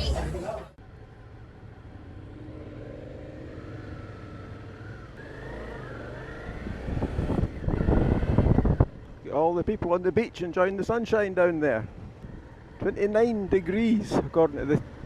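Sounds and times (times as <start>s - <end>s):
wind buffeting microphone: 6.4s - 11.1s.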